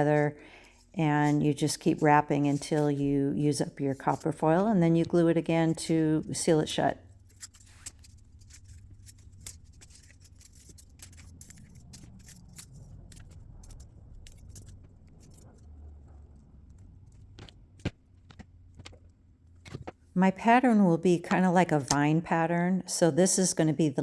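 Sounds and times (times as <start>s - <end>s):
copper foil crinkling: 5.8s - 16.0s.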